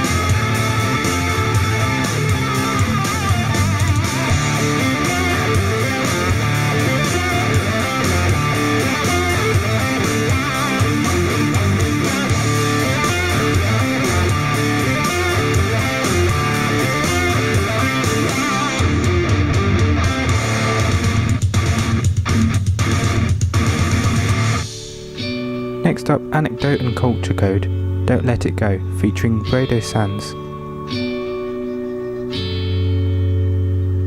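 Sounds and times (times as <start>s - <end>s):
rock music through portable speaker: 0.0s - 34.0s.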